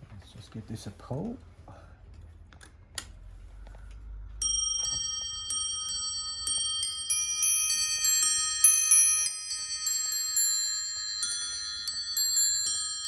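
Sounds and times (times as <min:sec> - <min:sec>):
clock bells chiming: 0:04.4 - 0:13.0.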